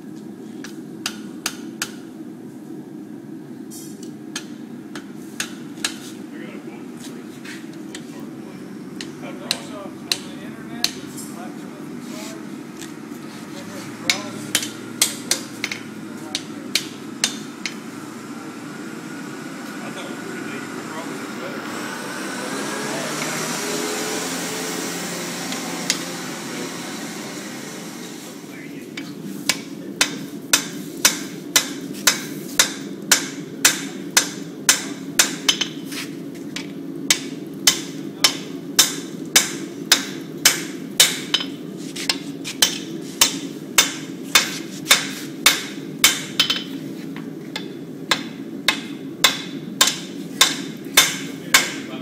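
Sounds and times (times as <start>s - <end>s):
hammer striking steel on anvil: 1.0s - 2.0s, 4.3s - 6.0s, 9.0s - 11.2s, 14.1s - 17.9s, 29.0s - 35.8s, 36.6s - 46.8s, 47.5s - 51.9s.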